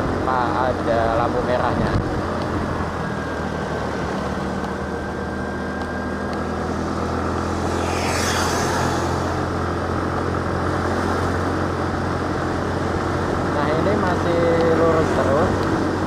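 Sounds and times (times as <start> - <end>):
vehicle engine and road drone: 0.0 - 16.0
rushing swish: 6.6 - 9.8.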